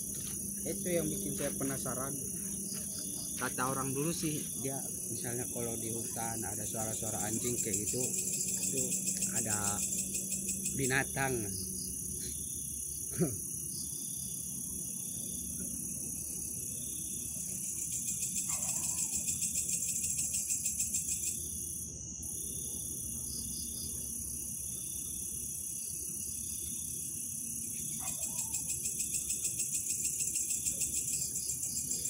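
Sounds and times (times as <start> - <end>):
faster pulsing insect layer: 0.0 - 12.0
crickets chirping: 0.0 - 32.0.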